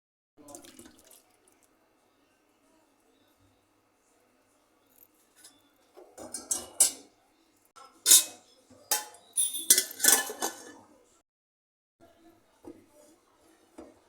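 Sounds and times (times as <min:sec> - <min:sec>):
metal pot and utensils clinking: 0:04.9 - 0:07.2, 0:07.8 - 0:10.9.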